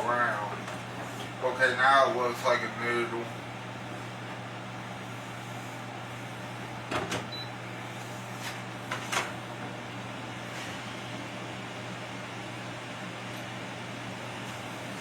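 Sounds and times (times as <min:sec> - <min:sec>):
kitchen appliance humming: 0:00.0 - 0:15.0.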